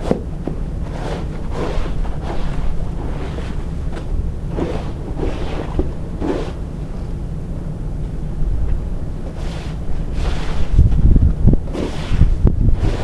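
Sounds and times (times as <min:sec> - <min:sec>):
wind rumbling on microphone: 0:00.0 - 0:13.0
short swishing or crunching sounds: 0:09.4 - 0:13.0.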